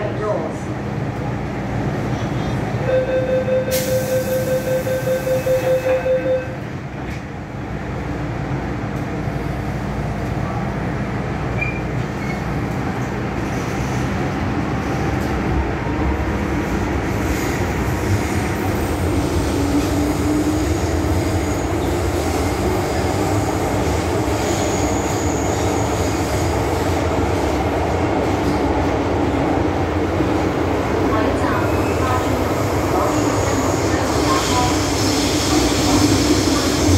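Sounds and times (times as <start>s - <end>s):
train wheels rumbling: 6.7s - 36.9s.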